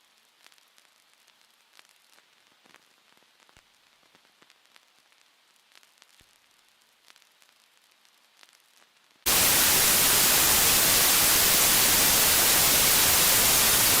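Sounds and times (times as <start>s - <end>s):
faint crackles: 0.0s - 14.0s
loud white-noise static: 9.3s - 14.0s.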